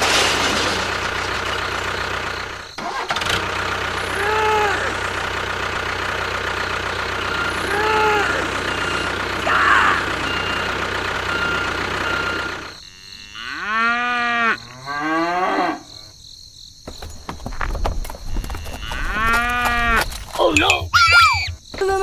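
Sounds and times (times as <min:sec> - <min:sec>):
small engine running: 0:00.0 - 0:12.8
cow mooing: 0:07.5 - 0:10.7, 0:12.1 - 0:16.0.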